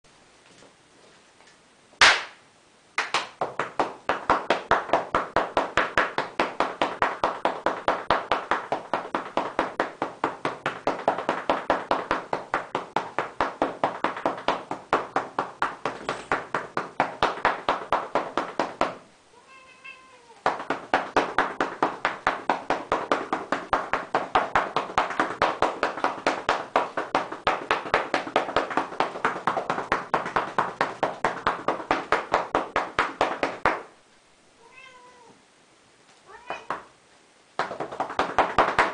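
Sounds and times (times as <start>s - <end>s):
cat meowing: 19.3s - 20.4s, 34.6s - 35.4s, 36.3s - 36.8s.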